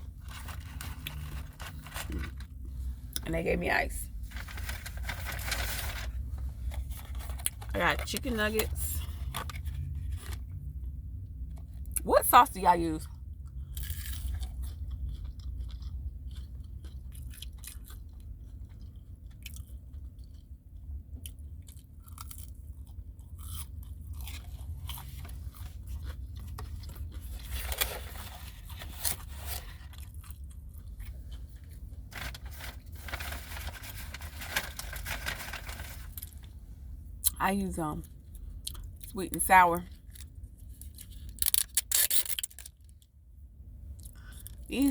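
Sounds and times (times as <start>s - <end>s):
person chewing crunchy food: 13.2s - 32.1s, 38.0s - 39.1s, 43.9s - 44.7s.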